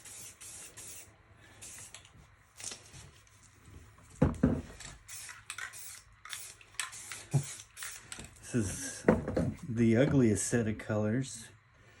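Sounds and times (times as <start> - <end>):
spray paint hissing: 0.0 - 2.0, 5.0 - 9.0.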